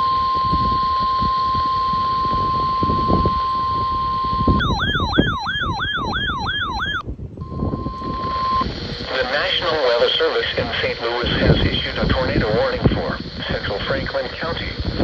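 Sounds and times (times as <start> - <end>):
warbling electronic siren: 0.0 - 8.6
steady alarm tone: 0.0 - 8.7.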